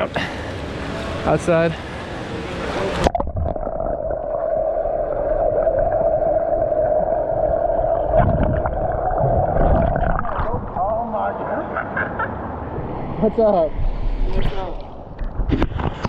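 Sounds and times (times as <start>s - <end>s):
churning water underwater: 2.9s - 10.9s
steady hum: 3.0s - 11.2s.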